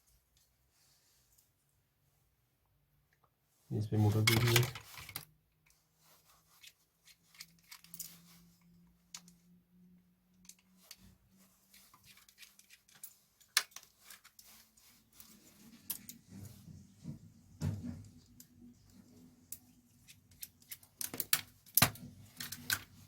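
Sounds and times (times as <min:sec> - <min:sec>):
small parts clicking and tapping: 0:04.1 - 0:05.8, 0:06.6 - 0:09.4, 0:10.3 - 0:11.1, 0:11.7 - 0:16.2, 0:19.5 - 0:23.0.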